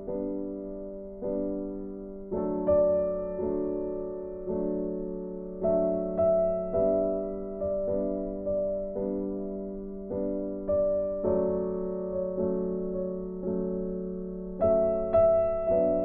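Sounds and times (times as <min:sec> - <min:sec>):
gentle piano chords: 0:00.0 - 0:16.0.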